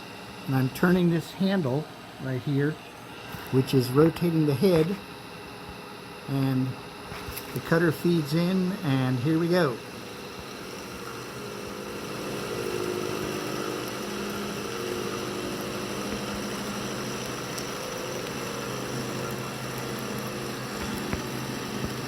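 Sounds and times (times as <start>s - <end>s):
milling machine hum: 0.0s - 22.0s.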